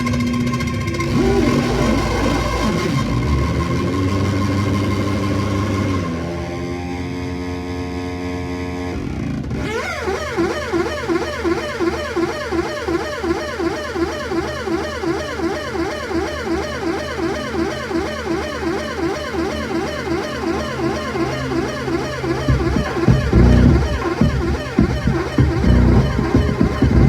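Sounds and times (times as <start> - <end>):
electronic music pitch sweep: 0.9 - 7.1, 9.6 - 27.0
low steady drone: 10.2 - 27.0.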